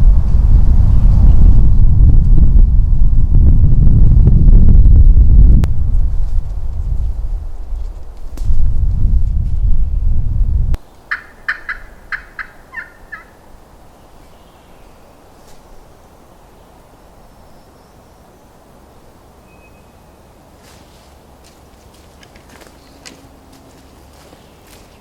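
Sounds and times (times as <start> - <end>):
wind buffeting microphone: 0.0 - 10.8
turkey gobbling: 11.1 - 13.4.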